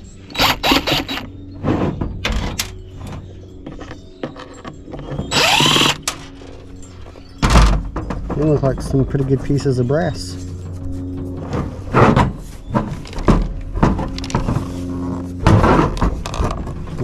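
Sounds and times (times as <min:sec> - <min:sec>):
power tool whir: 0:00.2 - 0:01.4, 0:05.3 - 0:06.3.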